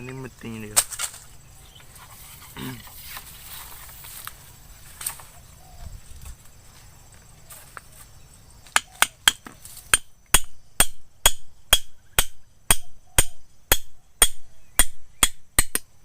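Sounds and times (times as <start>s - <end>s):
hard sharp blows: 8.7s - 15.9s.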